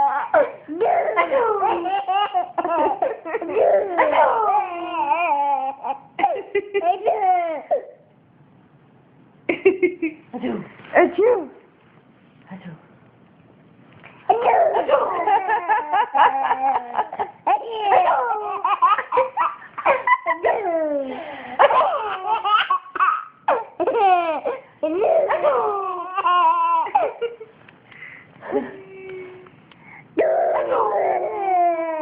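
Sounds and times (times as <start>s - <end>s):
baby laughing: 0.0s - 7.9s, 14.3s - 27.4s.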